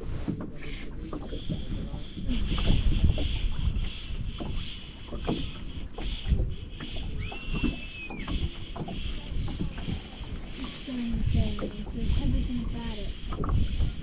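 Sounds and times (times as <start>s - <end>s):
soft low knocks: 0.0s - 14.0s
water lapping: 0.0s - 14.0s
wind buffeting microphone: 0.0s - 14.0s
high whistle-like tone: 7.2s - 8.4s.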